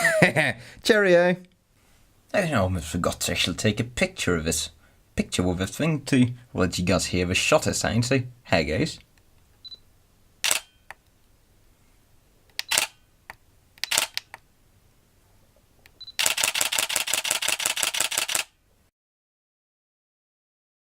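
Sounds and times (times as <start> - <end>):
camera focus beep: 9.6 - 9.8, 10.4 - 10.9, 12.6 - 13.1, 13.8 - 14.2, 16.0 - 18.4
rapid burst of shutter clicks: 10.4 - 10.8, 12.6 - 13.0, 13.8 - 14.4, 16.2 - 18.6
camera shutter clicks: 10.4 - 11.0, 12.5 - 13.0, 13.8 - 14.4, 16.2 - 18.6.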